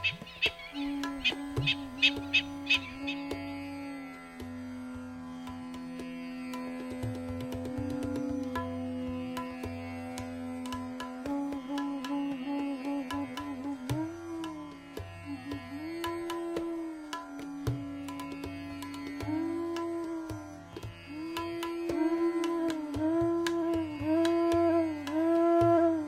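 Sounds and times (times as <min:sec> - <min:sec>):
bansuri flute melody: 0:00.0 - 0:26.0
tabla strokes: 0:00.0 - 0:26.0.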